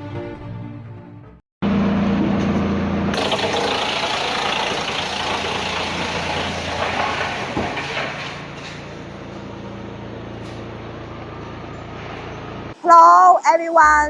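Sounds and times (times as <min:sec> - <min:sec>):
wood chipper grinding wood: 0:01.6 - 0:12.8
wood chipper hum: 0:01.6 - 0:12.8.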